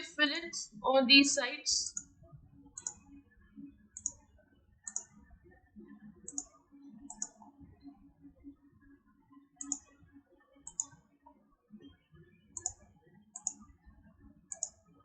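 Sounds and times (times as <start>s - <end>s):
computer mouse clicking: 1.9s - 2.2s, 2.8s - 3.0s, 4.0s - 4.2s, 4.8s - 5.2s, 6.3s - 7.4s, 9.6s - 9.9s, 10.6s - 11.0s, 12.6s - 13.6s, 14.5s - 14.8s.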